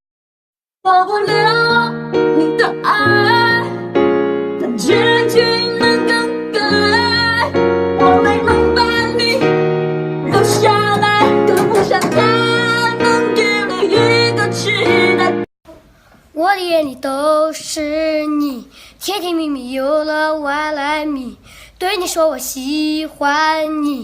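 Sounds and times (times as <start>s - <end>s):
person singing: 0.8s - 4.0s, 4.6s - 9.6s, 10.2s - 15.5s
keyboard chords: 1.1s - 15.5s.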